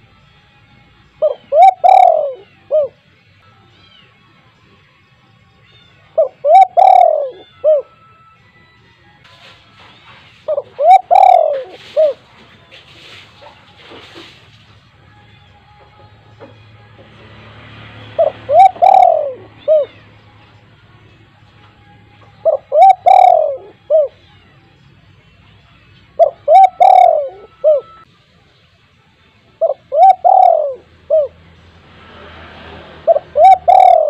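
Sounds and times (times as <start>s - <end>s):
dove cooing: 1.2s - 3.1s, 6.1s - 8.0s, 10.2s - 12.4s, 18.0s - 20.2s, 22.3s - 24.3s, 26.2s - 28.0s, 29.6s - 31.4s, 33.0s - 34.0s.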